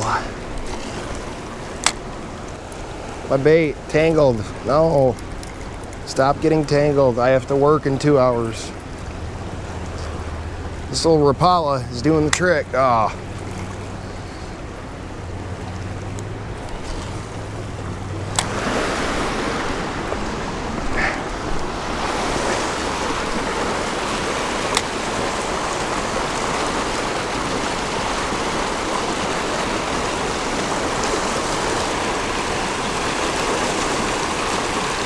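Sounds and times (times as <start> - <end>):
creek water rushing: 0.0 - 35.0.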